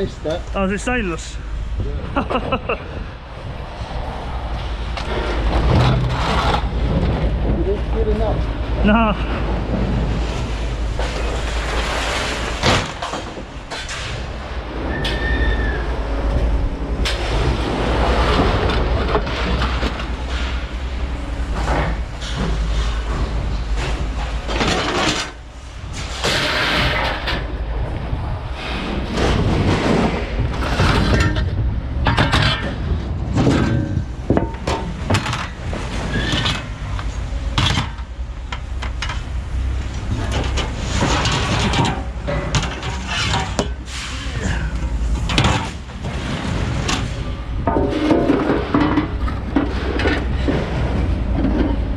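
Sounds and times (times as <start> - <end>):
wind rumbling on microphone: 0.0 - 51.9
scrap metal clanking: 5.0 - 7.3, 17.0 - 27.5, 28.6 - 39.3, 39.9 - 51.9.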